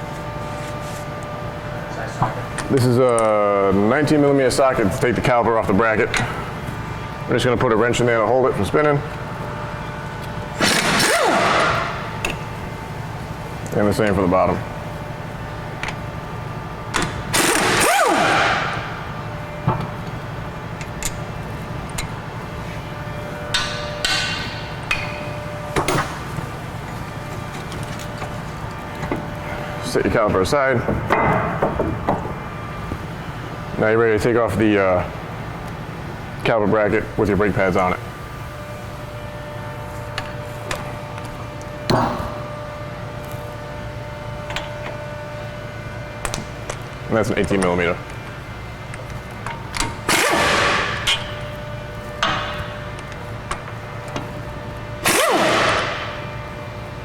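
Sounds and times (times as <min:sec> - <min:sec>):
steady shop hum: 0:00.0 - 0:57.0
power wrench bursts: 0:10.6 - 0:12.1, 0:17.3 - 0:18.8, 0:50.0 - 0:51.3, 0:55.0 - 0:56.2.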